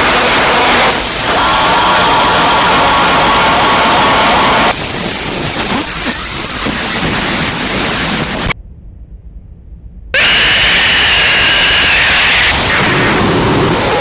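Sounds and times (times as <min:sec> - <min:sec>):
loud hiss-like noise: 0:00.0 - 0:08.6, 0:10.2 - 0:14.0
low rumble: 0:07.6 - 0:10.2.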